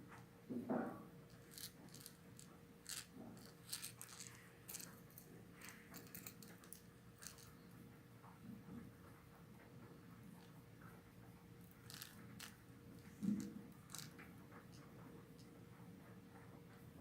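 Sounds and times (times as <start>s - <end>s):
small hard objects clicking and rattling: 1.3s - 7.6s, 11.7s - 14.2s.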